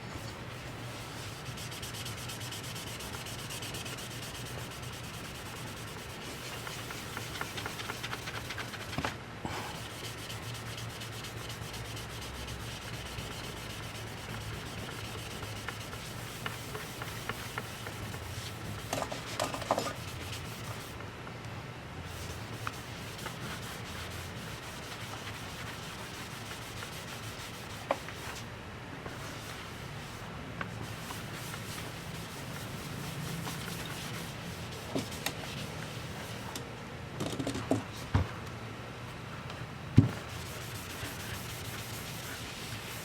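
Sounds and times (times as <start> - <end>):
scratchy scrubbing: 0.3 - 9.0, 9.7 - 21.0, 22.1 - 28.4, 40.3 - 43.0.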